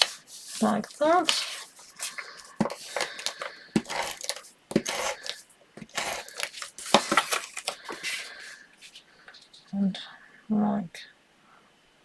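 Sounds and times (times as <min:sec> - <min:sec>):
paper rustling and crinkling: 0:00.0 - 0:09.0.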